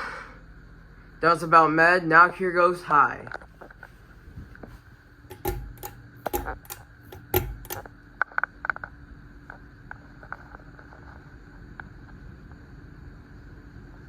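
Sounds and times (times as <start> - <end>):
fan motor humming: 0.7 - 8.2
fan switch clicks: 5.3 - 7.9.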